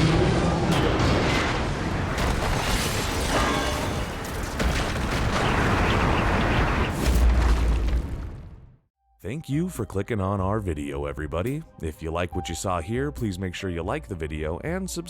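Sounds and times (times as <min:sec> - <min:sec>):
crashes: 0:00.0 - 0:08.7.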